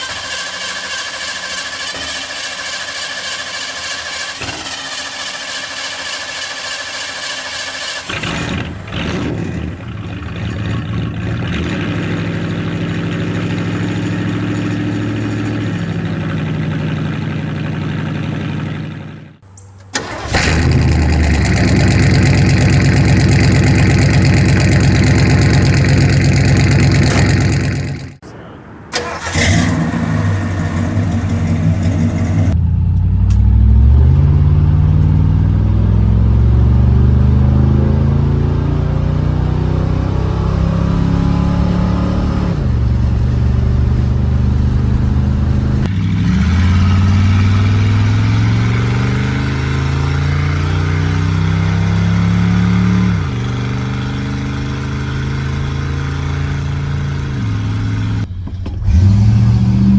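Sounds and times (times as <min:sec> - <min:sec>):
car exhaust accelerating: 0:08.0 - 0:59.9.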